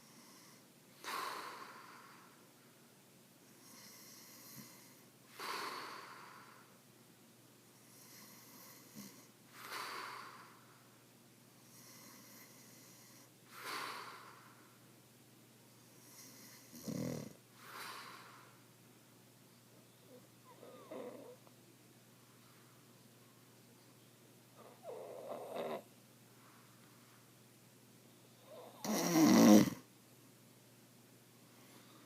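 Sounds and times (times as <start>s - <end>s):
soft breathing: 0.0s - 2.8s, 3.5s - 6.8s, 7.7s - 14.9s, 17.5s - 18.8s, 22.2s - 23.5s, 24.6s - 27.4s, 31.4s - 32.0s
man snoring loudly: 16.2s - 17.4s, 28.8s - 29.8s.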